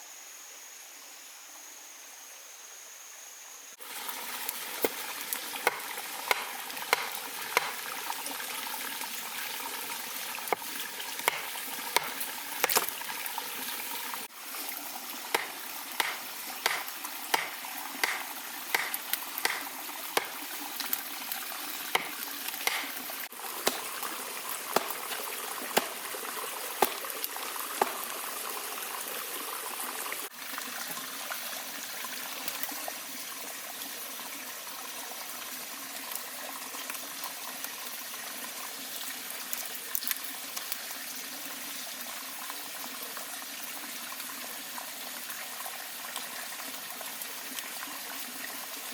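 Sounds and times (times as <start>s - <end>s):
food sizzling and bubbling: 3.8s - 32.7s
wood fire popping and crackling: 4.0s - 7.8s, 10.6s - 13.1s, 15.3s - 20.9s, 22.0s - 26.2s, 26.8s - 28.1s.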